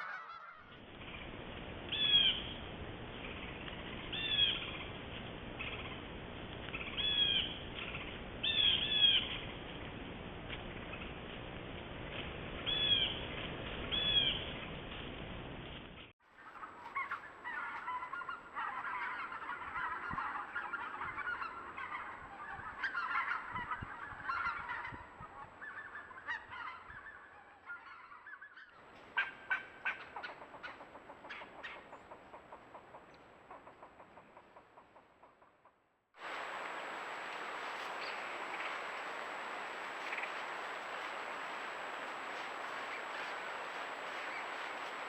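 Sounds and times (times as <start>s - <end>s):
geese honking: 0.0s - 0.8s, 16.4s - 34.8s, 36.2s - 45.0s
steady hiss: 36.2s - 45.0s.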